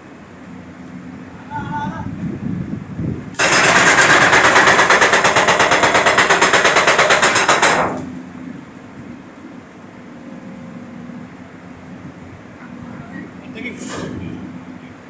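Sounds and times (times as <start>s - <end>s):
jackhammer pounding concrete: 3.4s - 8.2s
engine running: 3.4s - 8.8s.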